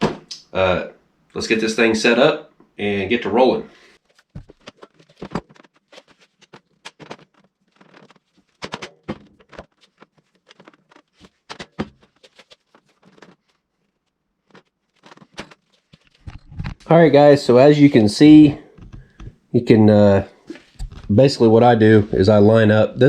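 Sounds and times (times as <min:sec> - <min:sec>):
clicks taps and light knocks: 0:18.7 - 0:19.4.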